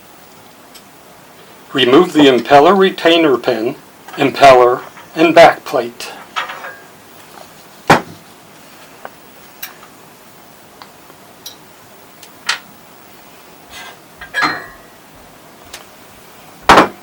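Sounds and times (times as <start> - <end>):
metal pump parts clinking: 6.2 - 6.9, 14.2 - 14.9.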